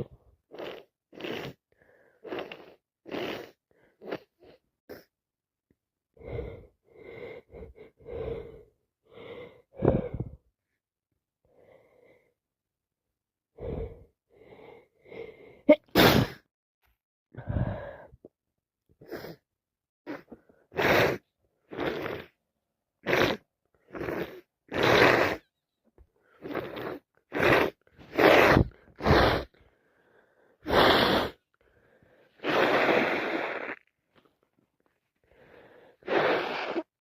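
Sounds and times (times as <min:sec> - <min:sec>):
person coughing and sneezing: 0:15.7 - 0:16.4.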